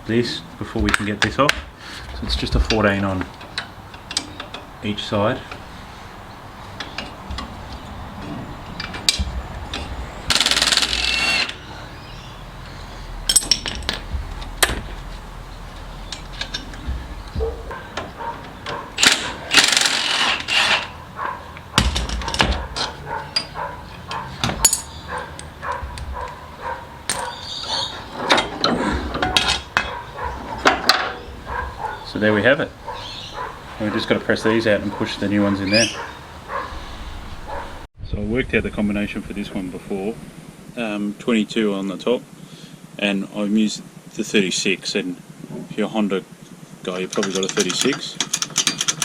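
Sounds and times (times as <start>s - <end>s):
power tool bursts: 10.3s - 11.6s
metal clicks and clinks: 21.8s - 26.4s, 47.1s - 49.0s.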